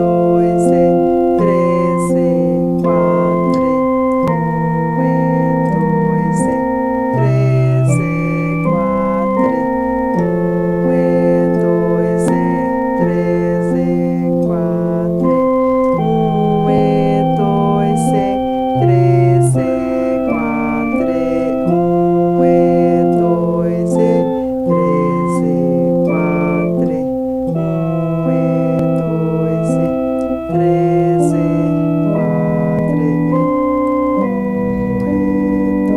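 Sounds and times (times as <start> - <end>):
electronic keyboard melody: 0.0 - 35.9.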